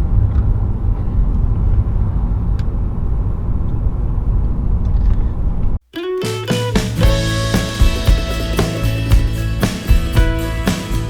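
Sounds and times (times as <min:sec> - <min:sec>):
music: 0:05.9 - 0:11.0.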